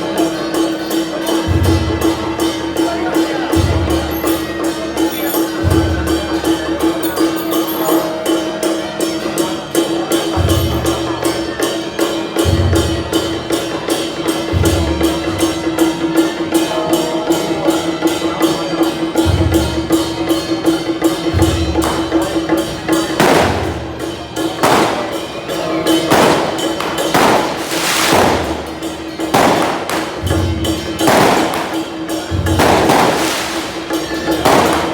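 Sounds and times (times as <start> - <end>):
fast percussion ticks: 19.2 - 34.9
firecrackers bursting: 22.9 - 34.9
low drum beat: 26.0 - 34.9.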